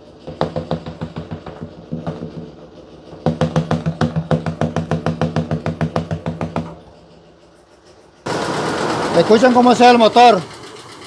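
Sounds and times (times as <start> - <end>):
engine misfire knocking: 8.3 - 11.0
low engine drone: 8.3 - 11.0.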